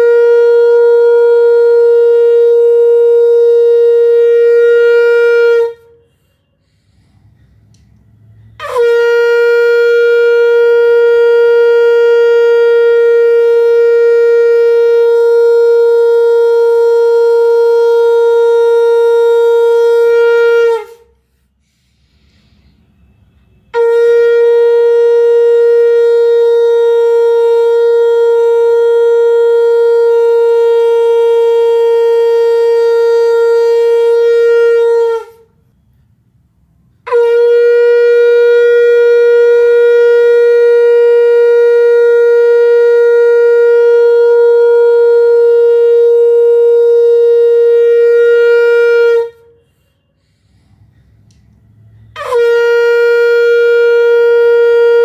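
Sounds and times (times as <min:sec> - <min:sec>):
conch shell blowing: 0:00.0 - 0:55.0.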